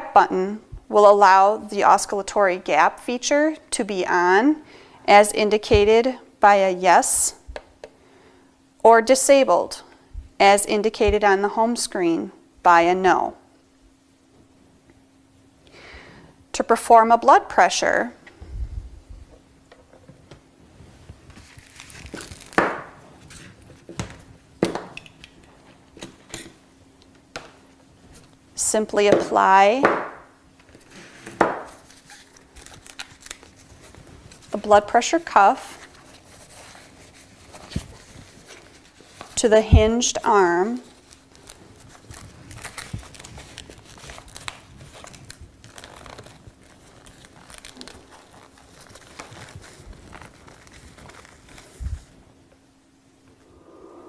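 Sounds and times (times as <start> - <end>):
faint steady hum: 0.0 - 54.0
blood pressure cuff crinkling: 19.7 - 24.4, 31.6 - 39.4, 40.7 - 52.3.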